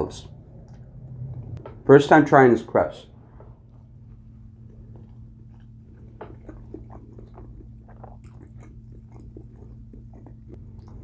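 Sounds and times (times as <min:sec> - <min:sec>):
low steady hum: 0:00.0 - 0:11.0
chewing with crunches: 0:00.5 - 0:01.3, 0:03.6 - 0:11.0.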